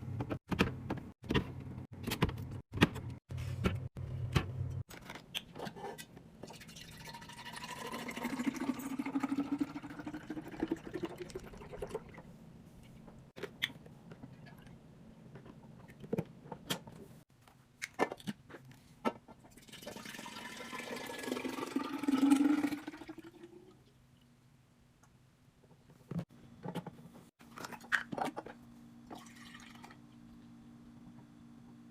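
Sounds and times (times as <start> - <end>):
liquid pouring into container: 6.5 - 12.2, 19.6 - 23.6, 29.1 - 30.0.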